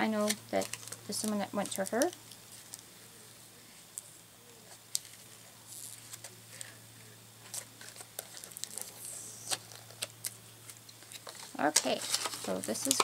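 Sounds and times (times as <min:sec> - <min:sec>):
faint low hum: 0:00.0 - 0:13.0
toy packaging rustling and clicking: 0:00.2 - 0:02.9, 0:07.4 - 0:13.0.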